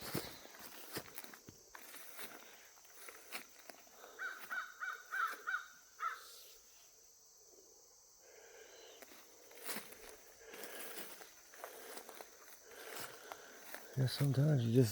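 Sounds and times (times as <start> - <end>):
crow cawing: 4.0 - 6.3.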